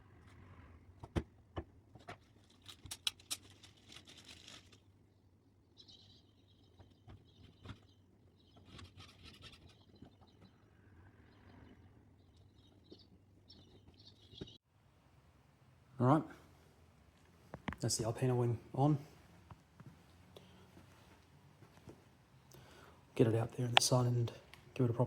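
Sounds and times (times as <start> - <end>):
plastic parts clicking: 2.4 - 4.8.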